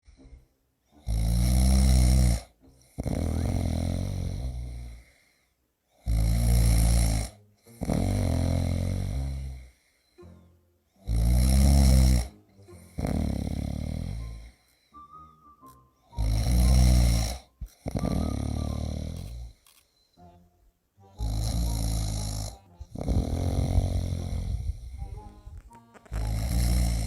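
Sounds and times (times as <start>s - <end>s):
person snoring loudly: 1.0s - 5.2s, 6.0s - 9.8s, 11.0s - 14.7s, 16.1s - 19.6s, 21.1s - 25.4s, 26.0s - 27.0s.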